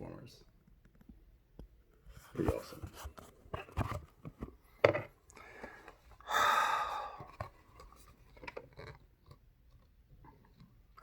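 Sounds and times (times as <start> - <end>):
man breathy exhale: 5.4 - 7.3.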